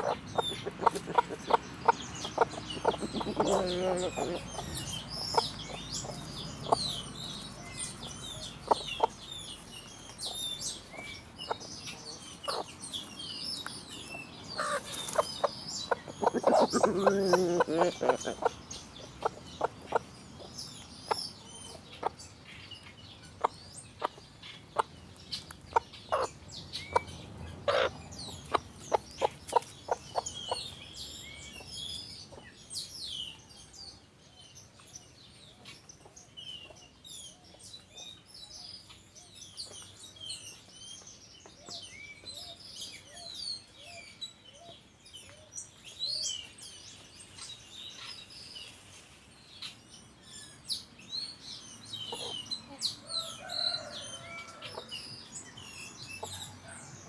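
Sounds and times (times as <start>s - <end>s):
bird clucking calls: 0.0s - 32.5s, 52.1s - 57.0s
small birds chirping: 0.0s - 57.0s.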